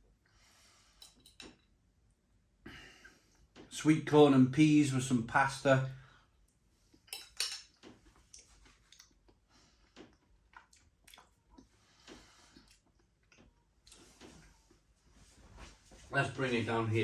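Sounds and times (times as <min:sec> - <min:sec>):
man chewing food: 0:07.7 - 0:14.6.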